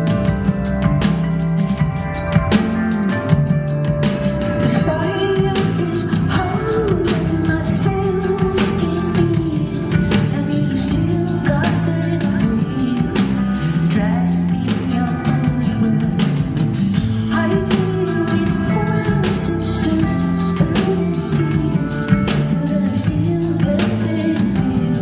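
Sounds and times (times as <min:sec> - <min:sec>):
drum hits: 0:00.0 - 0:10.4
bass guitar: 0:00.0 - 0:25.0
sustained keyboard chords: 0:00.0 - 0:25.0
woman singing: 0:04.5 - 0:25.0.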